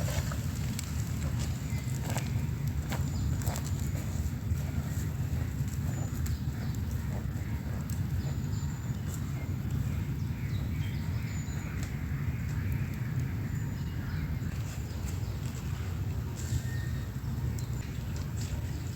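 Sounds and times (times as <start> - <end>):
faint bird chirps: 4.7 - 18.6.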